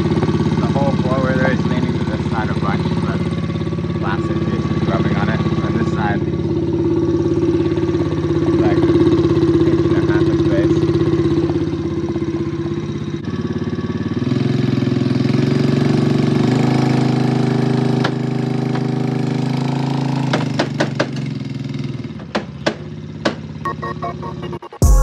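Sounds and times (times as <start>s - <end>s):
atv engine revving under load: 0.0s - 23.6s.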